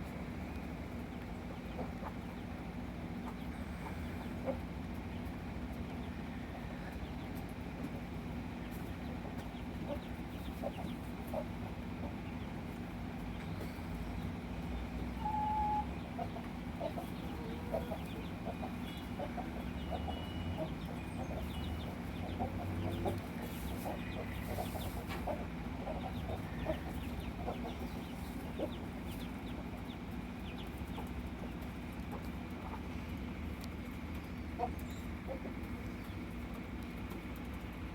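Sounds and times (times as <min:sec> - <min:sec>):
chicks peeping: 0:00.0 - 0:37.9
steady low hum: 0:00.0 - 0:37.9
hens clucking softly: 0:00.5 - 0:37.9.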